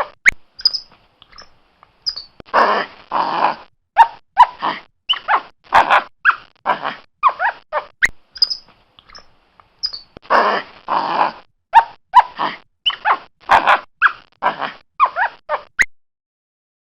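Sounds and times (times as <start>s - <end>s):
monkey screeching and squeaking: 0.0s - 2.4s, 4.0s - 10.2s, 11.8s - 15.9s.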